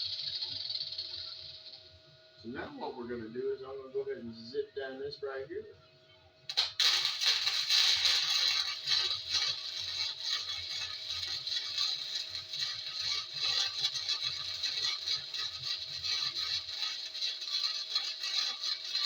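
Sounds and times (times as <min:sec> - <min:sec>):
arc welding crackle: 0:00.0 - 0:01.8, 0:06.5 - 0:19.0.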